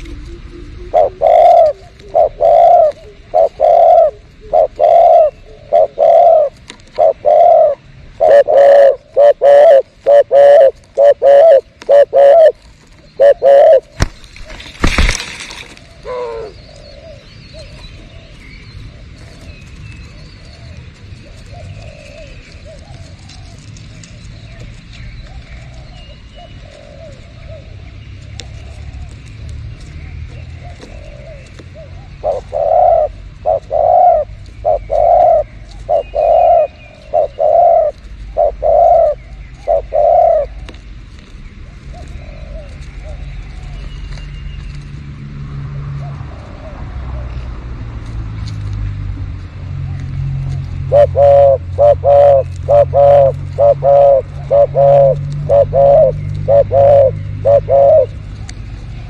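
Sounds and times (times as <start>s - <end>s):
doves cooing: 0.0s - 48.4s, 49.6s - 59.0s
loud crash-like noise: 14.0s - 15.8s.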